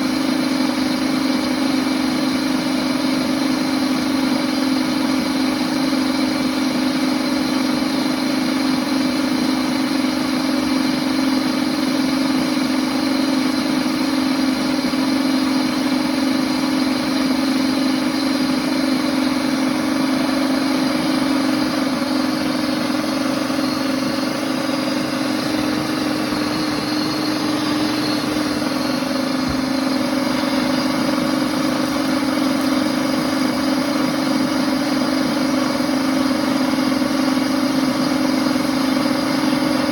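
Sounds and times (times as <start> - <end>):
blender motor humming: 0.0 - 39.9.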